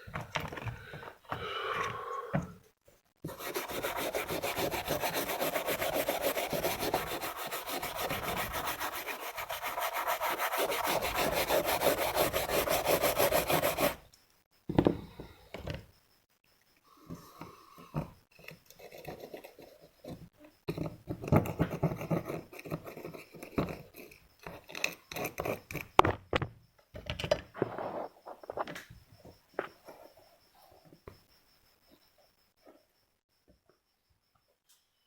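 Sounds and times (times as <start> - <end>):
hand tools scraping circuit board: 3.2 - 14.0, 21.2 - 26.0.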